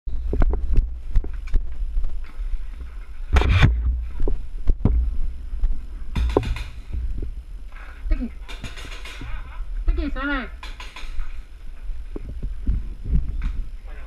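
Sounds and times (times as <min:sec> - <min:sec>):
low rumble: 0:00.1 - 0:08.4.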